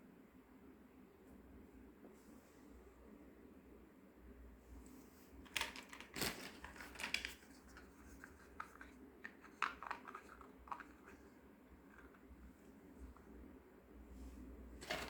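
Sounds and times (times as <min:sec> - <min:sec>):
plastic toy pieces clicking: 0:08.6 - 0:11.0.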